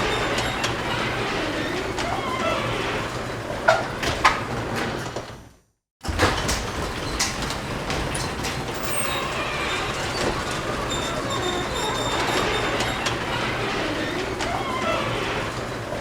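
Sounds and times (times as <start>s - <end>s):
garage door rattling on tracks: 0.0s - 16.0s
high-pitched squeals: 8.7s - 16.0s.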